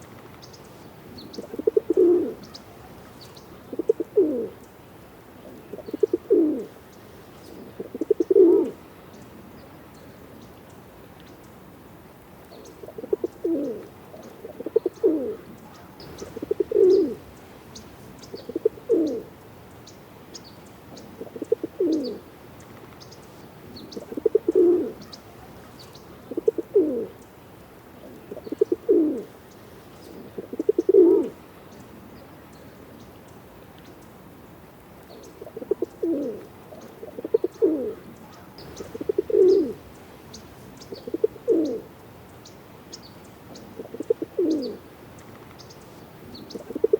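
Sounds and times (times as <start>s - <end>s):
pigeon cooing: 1.1s - 4.6s, 5.4s - 6.8s, 7.5s - 8.8s, 12.8s - 19.4s, 21.0s - 22.3s, 23.7s - 27.2s, 28.0s - 29.3s, 30.0s - 31.4s, 35.4s - 42.0s, 43.6s - 44.8s, 46.3s - 46.9s.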